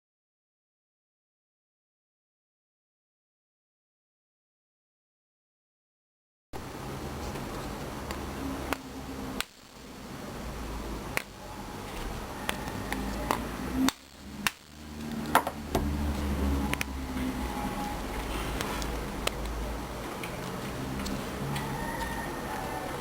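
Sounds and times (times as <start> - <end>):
steady low hum: 6.6 - 23.0.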